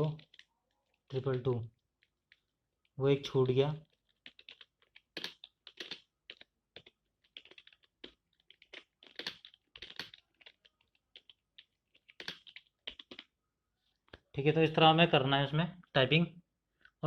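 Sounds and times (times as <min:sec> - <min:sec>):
keyboard typing clicks: 0:04.2 - 0:13.3.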